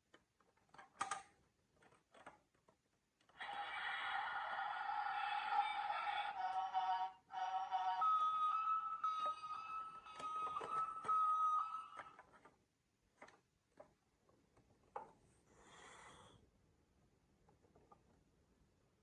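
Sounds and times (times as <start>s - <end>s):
electronic toy-like tone: 5.4s - 12.1s.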